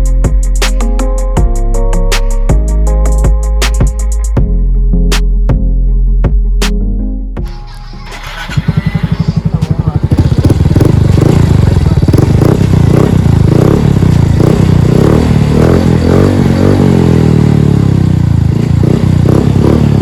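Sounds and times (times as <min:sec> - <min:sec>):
scooter engine running loud: 0:07.6 - 0:20.0.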